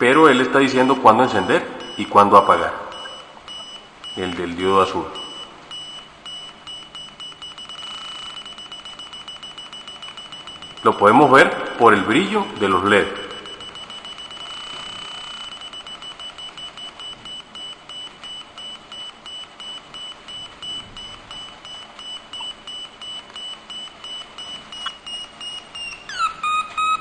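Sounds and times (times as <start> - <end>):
high-pitched electronic tone: 25.8 - 27.0.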